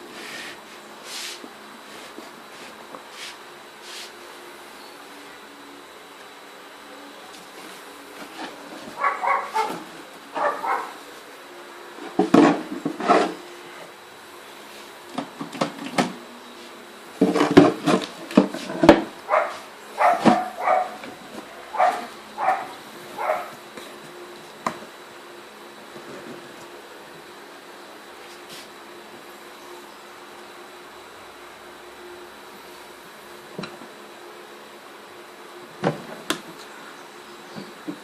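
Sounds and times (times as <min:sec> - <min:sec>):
dog barking: 0:09.0 - 0:09.8, 0:10.4 - 0:11.0, 0:19.3 - 0:21.0, 0:21.6 - 0:23.6.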